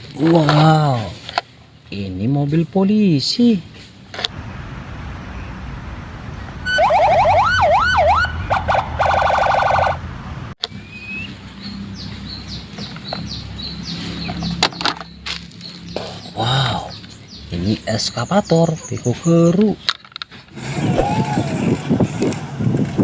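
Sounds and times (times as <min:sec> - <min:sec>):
toy electronic siren wailing: 0:06.6 - 0:10.0.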